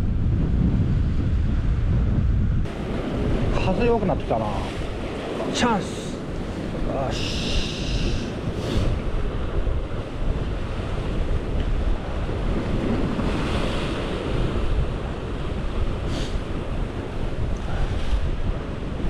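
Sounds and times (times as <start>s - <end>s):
wind rumbling on microphone: 0.0s - 19.0s
hissing white water surges: 2.7s - 9.1s
surf washing against rocks: 2.7s - 19.0s.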